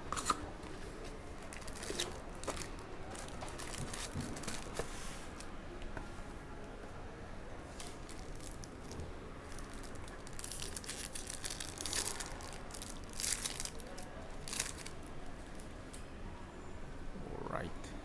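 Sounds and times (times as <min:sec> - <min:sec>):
wrapper crumpling and tearing: 0:01.4 - 0:04.8, 0:07.9 - 0:15.1.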